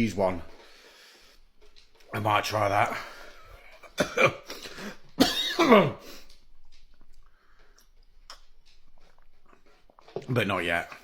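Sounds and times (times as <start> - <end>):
man coughing and clearing throat: 3.8 - 6.3.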